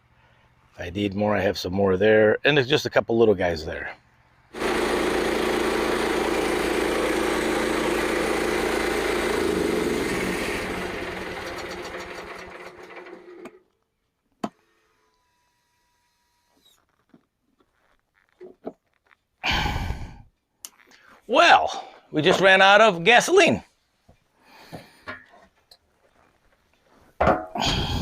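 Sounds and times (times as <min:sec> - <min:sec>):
gasoline engine sputtering: 0:04.6 - 0:13.5.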